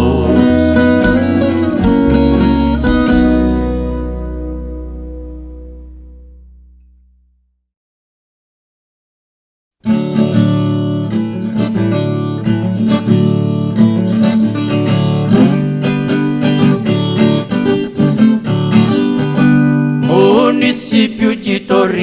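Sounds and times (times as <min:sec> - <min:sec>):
guitar plucked and strummed: 0:00.0 - 0:07.4, 0:09.8 - 0:21.5
low bass line: 0:00.0 - 0:07.6.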